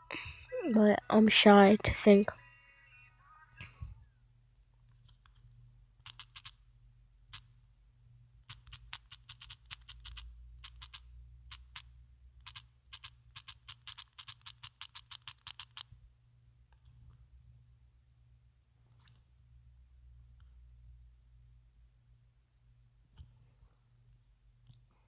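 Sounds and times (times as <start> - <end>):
keyboard keys clicking: 6.0 - 6.5, 8.5 - 11.8, 12.4 - 15.8.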